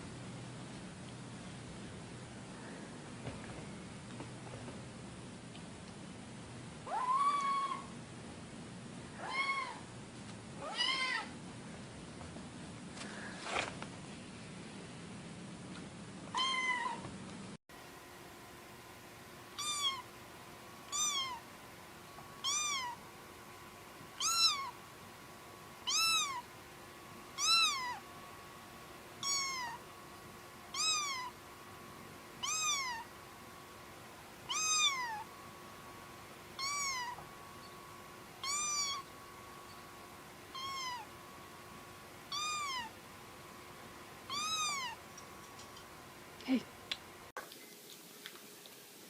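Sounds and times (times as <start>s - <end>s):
cat meowing: 6.9s - 7.9s, 9.2s - 9.8s, 10.6s - 11.3s, 16.3s - 17.0s, 19.6s - 20.0s, 20.9s - 21.4s, 22.4s - 23.0s, 24.2s - 24.8s, 25.8s - 26.4s, 27.4s - 28.0s, 29.2s - 29.8s, 30.7s - 31.3s, 32.4s - 33.1s, 34.5s - 35.3s, 36.6s - 37.2s, 38.4s - 39.1s, 40.5s - 41.1s, 42.3s - 43.0s, 44.3s - 45.0s.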